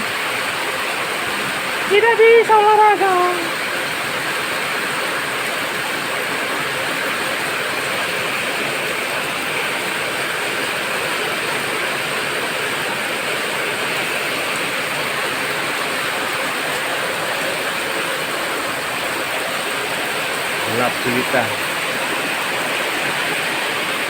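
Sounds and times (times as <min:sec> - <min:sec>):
heavy rain hissing: 0:16.4 - 0:24.0.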